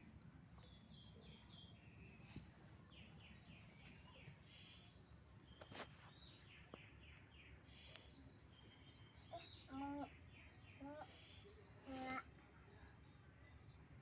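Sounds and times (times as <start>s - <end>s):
faint birds chirping: 0.0s - 14.0s.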